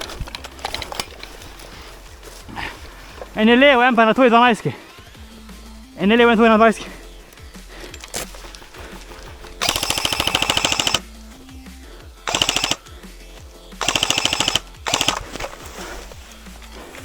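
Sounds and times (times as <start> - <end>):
airsoft rifle firing bursts: 8.2 - 11.2, 12.2 - 12.9, 13.8 - 16.0.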